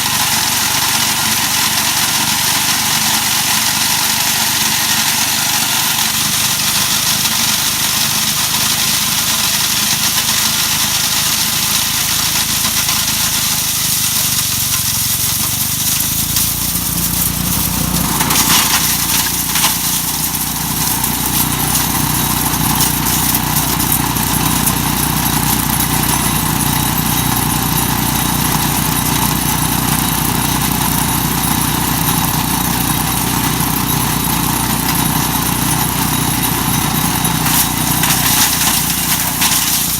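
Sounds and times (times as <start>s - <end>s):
wood chipper running: 0.0s - 39.9s
sharp knocks clattering: 14.8s - 39.9s.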